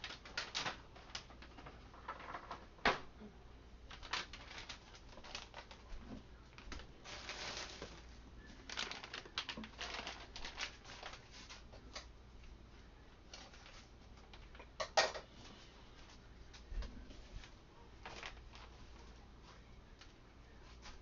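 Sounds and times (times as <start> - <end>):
rustling: 3.9 - 12.1, 12.7 - 14.6, 15.3 - 21.0.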